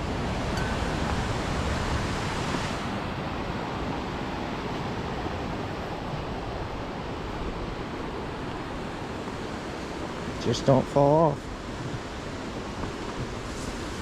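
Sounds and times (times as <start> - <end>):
wind noise on microphone: 0.0 - 10.5, 11.4 - 14.0
ocean surf rushing: 0.0 - 14.0.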